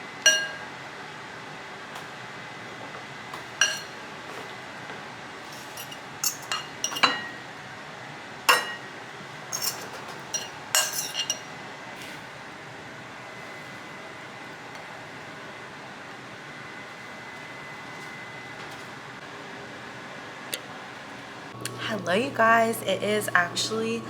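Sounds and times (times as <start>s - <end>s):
kitchenware clinking: 0.3s - 0.7s, 3.6s - 4.0s, 5.5s - 7.4s, 8.5s - 8.9s, 9.5s - 11.5s.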